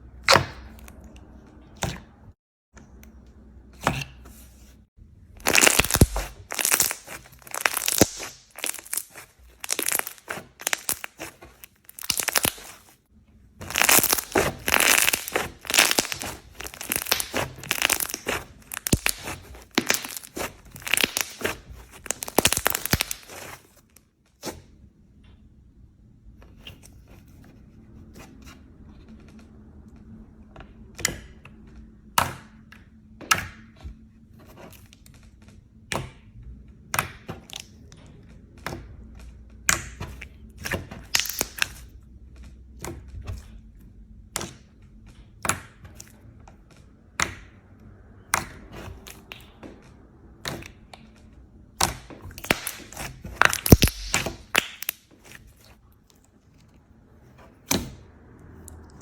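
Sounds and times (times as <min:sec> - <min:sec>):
slime clicking and popping: 0:05.4 - 0:12.8, 0:13.6 - 0:23.5, 0:40.6 - 0:41.9, 0:51.8 - 0:55.4.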